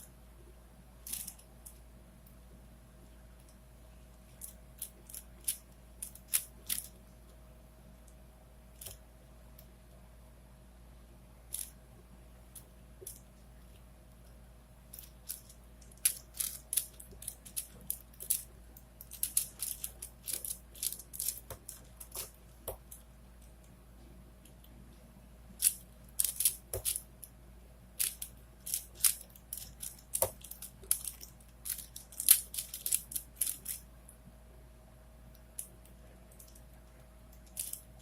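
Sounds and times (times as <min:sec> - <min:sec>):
puzzle cube plastic clicks: 0:01.1 - 0:01.5, 0:15.0 - 0:23.0, 0:25.6 - 0:27.1, 0:28.0 - 0:33.8, 0:37.4 - 0:37.9.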